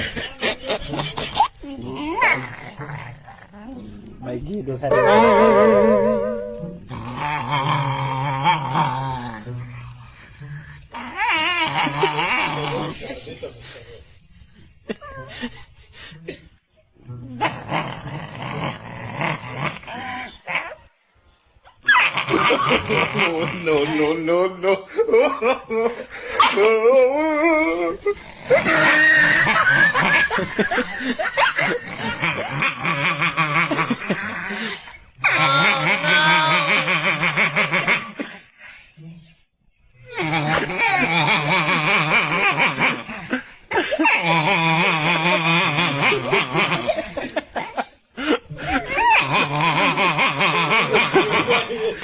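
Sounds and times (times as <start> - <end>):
people laughing: 0.0 - 2.2, 4.8 - 6.9, 11.6 - 16.6, 22.2 - 38.8, 40.2 - 52.0
person laughing: 4.9 - 6.8
long wavering cry: 4.9 - 7.3.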